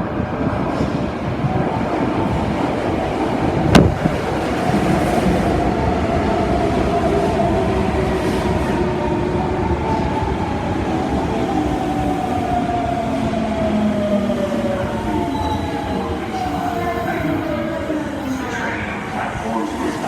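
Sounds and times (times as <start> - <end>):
subway train rumble: 0.0 - 20.0.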